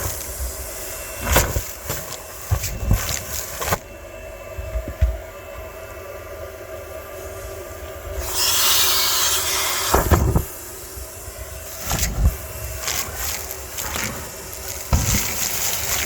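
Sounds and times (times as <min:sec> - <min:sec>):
vacuum cleaner motor hum: 0:07.5 - 0:16.0
loud hiss of rushing air: 0:08.1 - 0:16.0.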